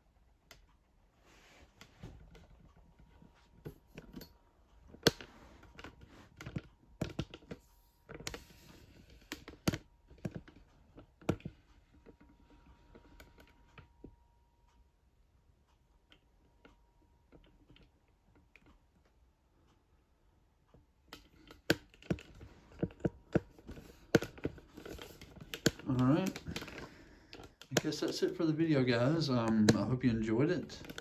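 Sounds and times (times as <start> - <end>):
faint steady hum: 0.0 - 31.0
plastic toy parts clicking: 21.2 - 28.4, 30.6 - 31.0.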